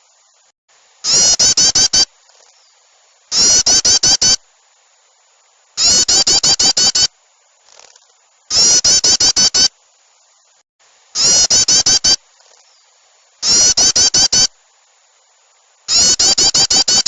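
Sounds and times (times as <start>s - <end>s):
agitated bird chatter: 1.1s - 2.7s, 3.3s - 4.4s, 5.8s - 7.1s, 7.7s - 9.7s, 11.2s - 14.5s, 15.9s - 17.0s.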